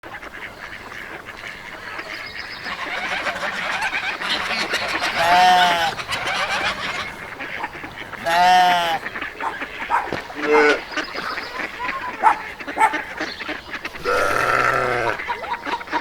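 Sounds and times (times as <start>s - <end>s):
poultry chatter: 0.0s - 16.0s
loud drawn-out honking call: 5.1s - 6.0s, 8.0s - 9.3s, 13.9s - 15.2s.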